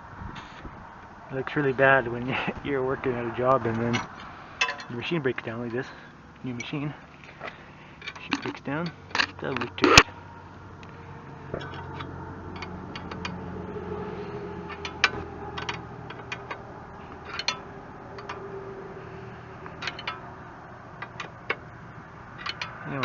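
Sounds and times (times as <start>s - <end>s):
low steady hum: 0.0s - 23.0s
wrench clicking on metal bolts: 3.9s - 4.9s, 11.6s - 13.4s, 14.7s - 16.6s, 17.2s - 18.4s, 19.8s - 20.3s, 21.0s - 21.7s, 22.3s - 23.0s.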